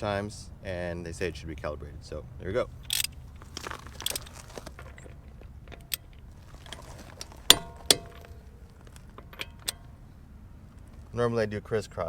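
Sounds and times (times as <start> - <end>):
torque wrench clicking: 5.7 - 9.9.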